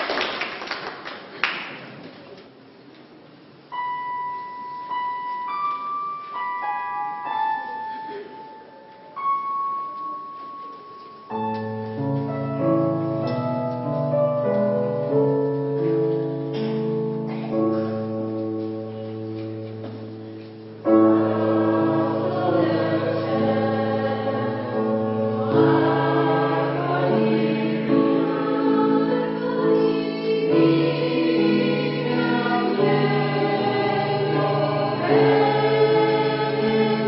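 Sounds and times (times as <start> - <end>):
applause: 0.0 - 2.1
keyboard slow melody: 3.6 - 37.0
sustained low keyboard chords: 3.7 - 37.0.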